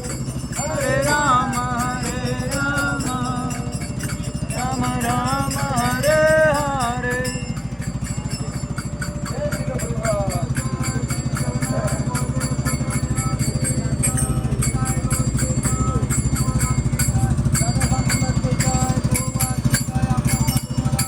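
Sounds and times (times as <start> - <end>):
jingling percussion and drum: 0.0 - 21.0.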